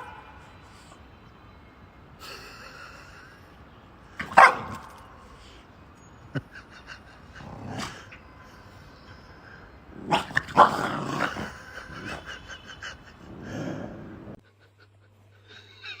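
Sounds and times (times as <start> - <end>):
dog barking: 4.2 - 4.9, 10.1 - 11.1.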